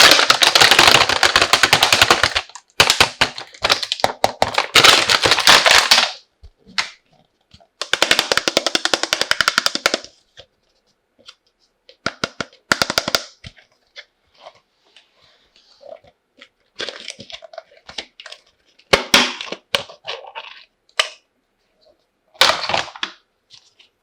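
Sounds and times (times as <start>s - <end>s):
plastic toy pieces crackling: 0.0s - 6.2s, 7.8s - 10.1s.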